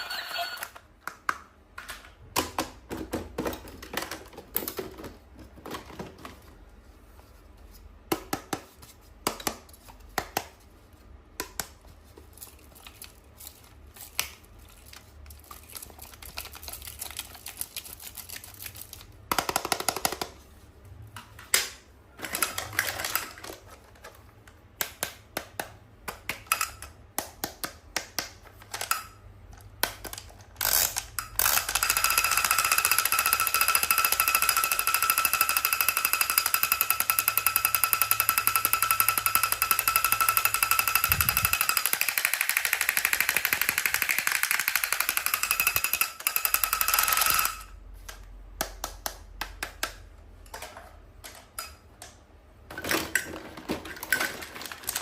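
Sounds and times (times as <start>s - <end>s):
plastic pieces clicking: 39.4s - 55.0s.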